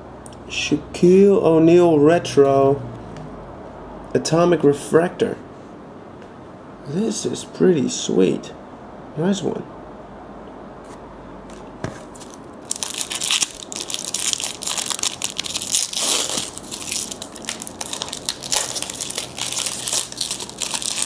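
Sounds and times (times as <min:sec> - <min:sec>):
wrapper crinkling: 0:12.0 - 0:21.0.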